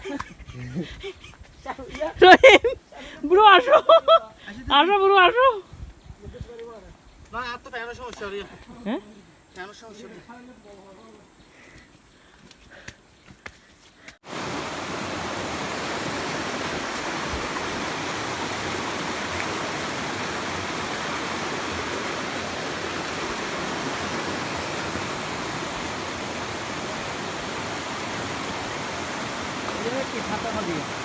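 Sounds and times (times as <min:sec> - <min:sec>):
waterfall rushing: 0:14.2 - 0:31.0.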